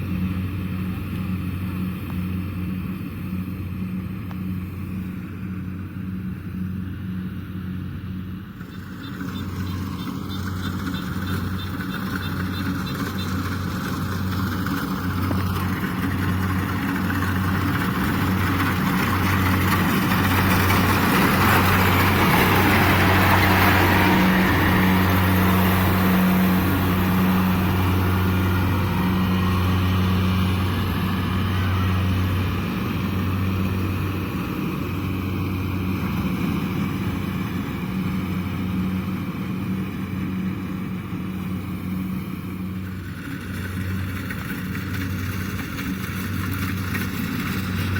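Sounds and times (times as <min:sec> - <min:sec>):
combine harvester engine hum: 0:00.0 - 0:47.9
rushing noise: 0:16.4 - 0:35.2.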